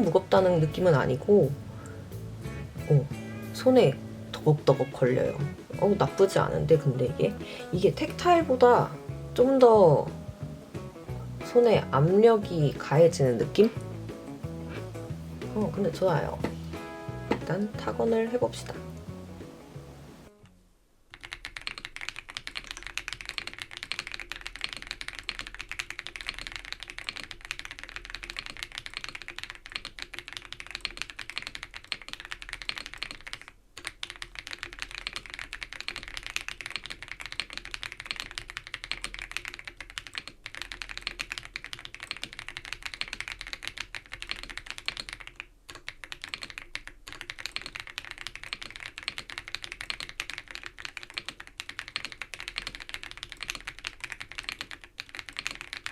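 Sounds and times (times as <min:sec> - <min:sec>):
fast typing on mechanical keyboard: 0:21.1 - 0:55.9.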